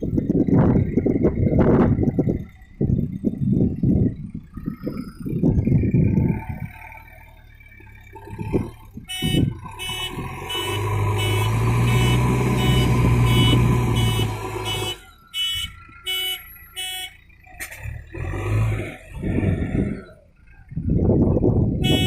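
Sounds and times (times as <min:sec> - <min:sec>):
diesel engine running: 0:00.0 - 0:22.0
reversing alarm beeping: 0:09.1 - 0:17.6.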